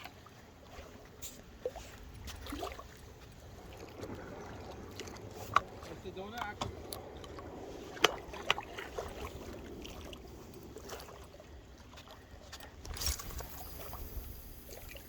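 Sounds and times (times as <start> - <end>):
moving water: 0.0 - 15.0
wind: 0.0 - 15.0
rustling hiss: 13.0 - 15.0.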